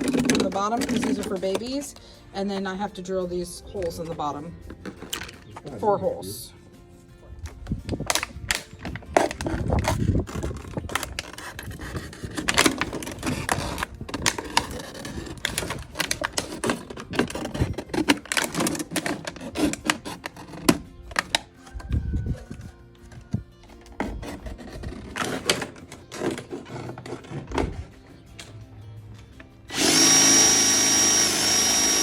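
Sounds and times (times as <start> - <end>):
plastic jugs clattering and crinkling: 0.0 - 6.2, 7.4 - 28.6.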